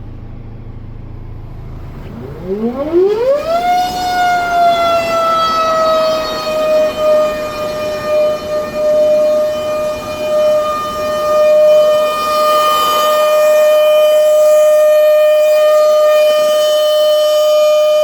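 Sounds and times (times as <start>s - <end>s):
low rumble: 0.0s - 12.1s
truck compressor whine: 0.0s - 18.0s.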